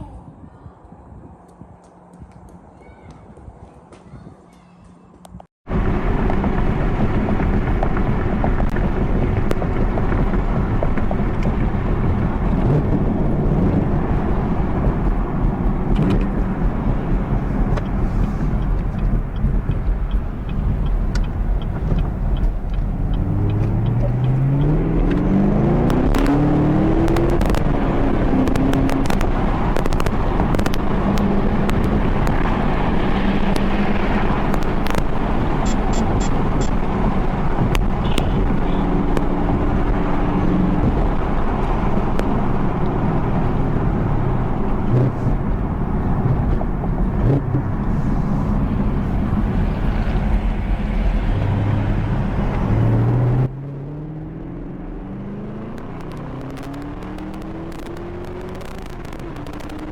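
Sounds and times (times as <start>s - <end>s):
wind and road noise: 0.0s - 59.9s
car engine accelerating: 5.7s - 59.9s
scattered clicks: 55.7s - 59.9s.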